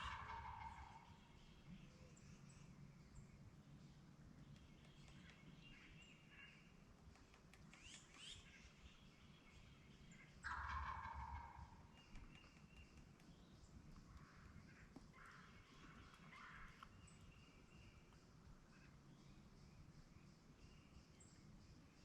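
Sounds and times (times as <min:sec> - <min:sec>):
turkey gobbling: 0:00.0 - 0:01.2, 0:10.4 - 0:11.8
songbird chirps: 0:00.0 - 0:22.0.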